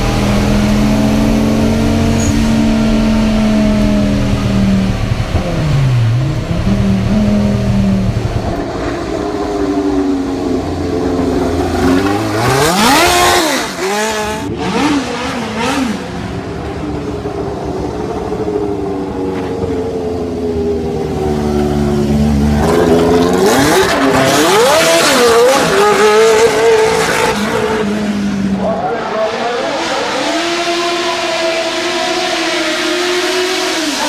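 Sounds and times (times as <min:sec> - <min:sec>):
race car engine revving: 0:00.0 - 0:34.0.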